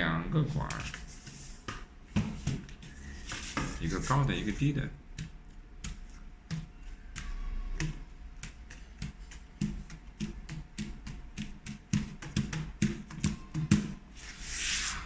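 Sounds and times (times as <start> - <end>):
tubes being tapped: 0.0 - 14.3.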